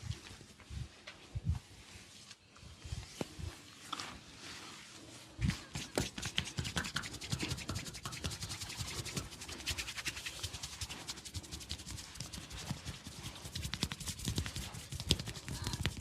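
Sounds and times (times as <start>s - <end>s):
hands rubbing oiled skin: 4.0s - 16.0s.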